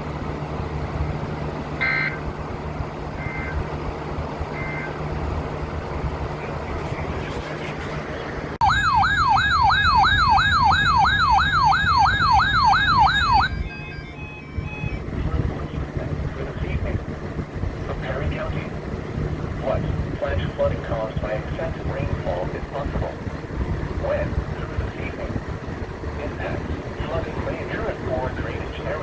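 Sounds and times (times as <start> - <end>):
yelping siren: 1.8 - 2.2, 8.6 - 15.2
radio hiss and hum: 6.4 - 8.3, 15.2 - 17.0, 19.6 - 23.2, 26.2 - 29.0.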